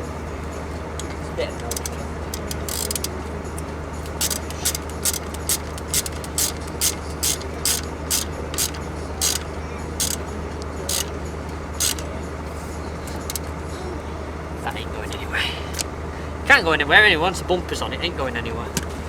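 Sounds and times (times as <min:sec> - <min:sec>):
steady low hum: 0:00.0 - 0:19.0
ratchet wrench clicking: 0:01.6 - 0:12.1, 0:13.1 - 0:13.5.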